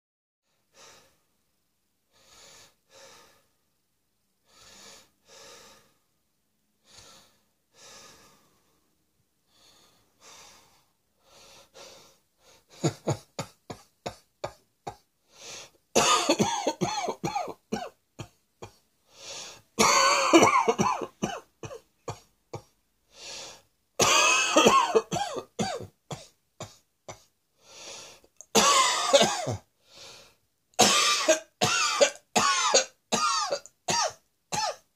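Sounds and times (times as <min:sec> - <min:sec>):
person coughing: 0:12.8 - 0:15.0, 0:16.0 - 0:18.8, 0:19.8 - 0:22.7, 0:24.0 - 0:27.3, 0:28.6 - 0:29.7, 0:30.8 - 0:34.9.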